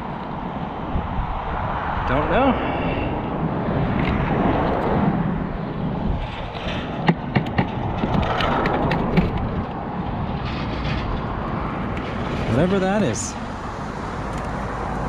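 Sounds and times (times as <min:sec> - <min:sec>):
traffic rumble: 0:00.0 - 0:15.0
sharp metal clicks and knocks: 0:06.2 - 0:11.3.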